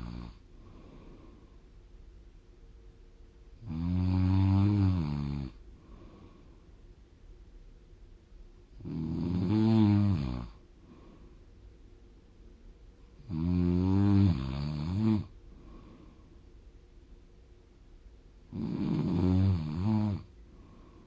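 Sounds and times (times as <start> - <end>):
loud snoring: 0.0 - 0.4, 3.6 - 5.6, 8.8 - 10.6, 13.2 - 15.3, 18.5 - 20.3.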